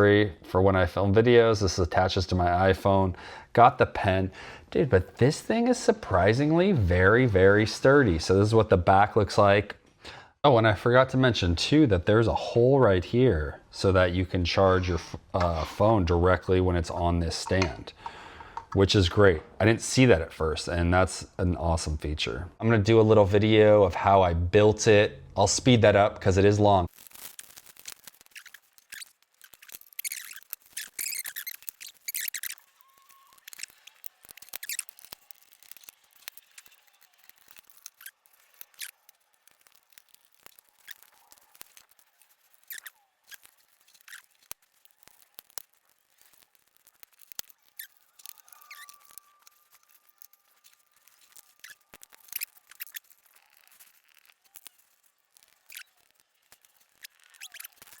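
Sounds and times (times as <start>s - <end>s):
faint drawn-out squeak: 28.3s - 39.6s, 40.4s - 45.4s, 47.1s - 58.0s.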